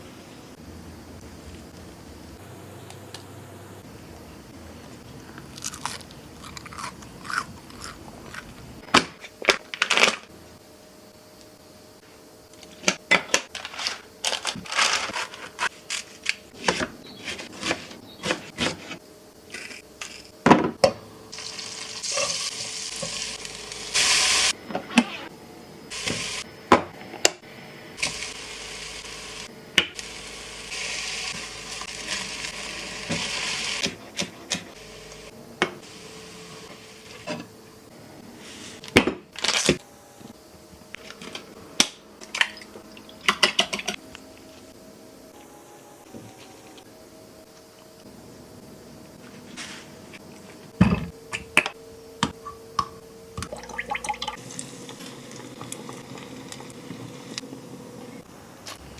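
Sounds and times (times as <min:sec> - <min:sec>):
food sizzling in a frying pan: 0:21.3 - 0:24.5, 0:28.0 - 0:33.9.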